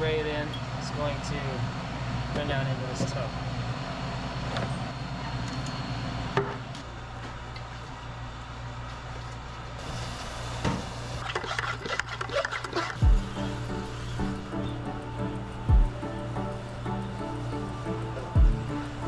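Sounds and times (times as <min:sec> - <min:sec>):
water spray hissing: 0:12.8 - 0:19.0
steady low hum: 0:12.9 - 0:19.0.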